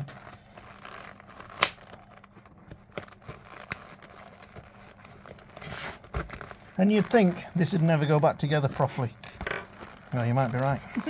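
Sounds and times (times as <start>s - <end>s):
loud sharp snap: 1.5s - 1.8s
boot clicking and crackling: 6.2s - 11.0s.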